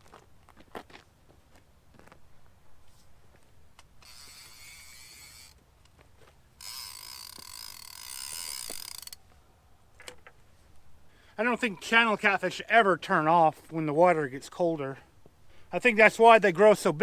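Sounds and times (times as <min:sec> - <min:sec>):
fishing reel ratcheting: 0:04.0 - 0:05.6, 0:06.6 - 0:09.2.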